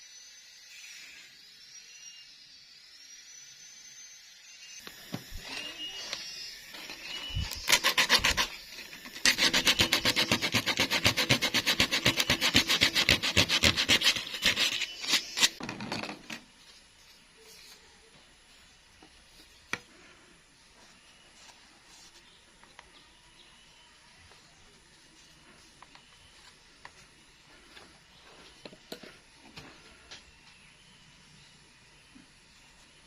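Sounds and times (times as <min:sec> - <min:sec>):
hand tool scraping a workpiece: 0:05.3 - 0:15.6.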